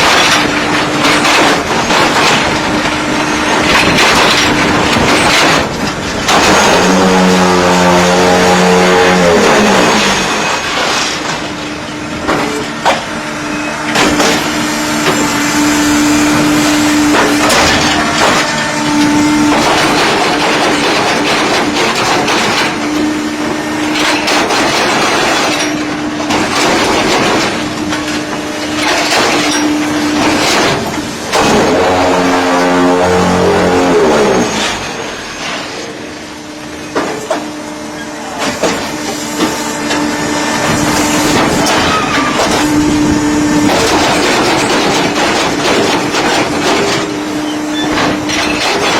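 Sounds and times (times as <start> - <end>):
block machine rattling: 0.0 - 11.5, 16.1 - 23.1, 23.8 - 32.8, 40.7 - 48.9
steady machine hum: 0.0 - 48.9.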